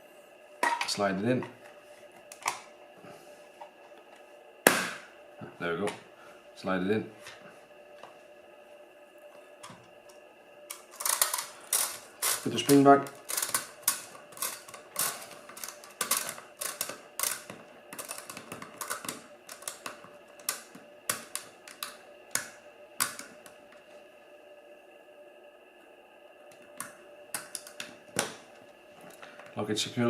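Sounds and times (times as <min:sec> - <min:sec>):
plastic and metal parts clicking: 0:10.7 - 0:23.3.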